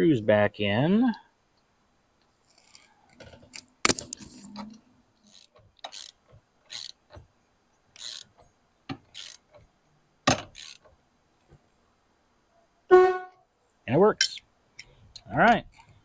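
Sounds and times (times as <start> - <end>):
hand tool ratchet rasping: 5.3 - 7.0, 8.0 - 8.4, 9.1 - 9.6, 10.5 - 10.9.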